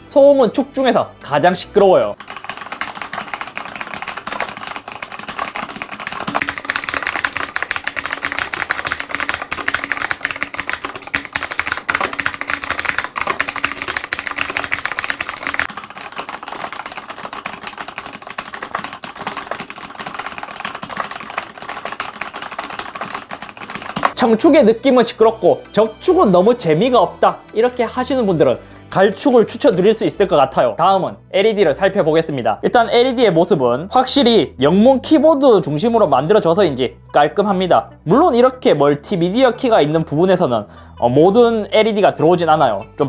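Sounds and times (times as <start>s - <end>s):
rapid mechanical keyboard typing: 2.0s - 24.2s.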